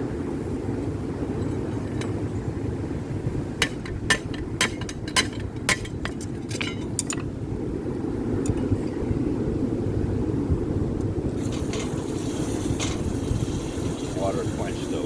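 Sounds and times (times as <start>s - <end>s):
metal-on-metal clinks: 3.6s - 7.3s
forge burner roaring: 9.5s - 15.0s.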